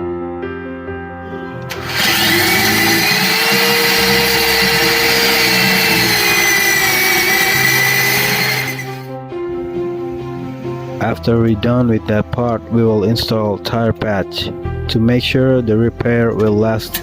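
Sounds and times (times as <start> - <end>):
power buffer grinding rubber: 1.7 - 9.1.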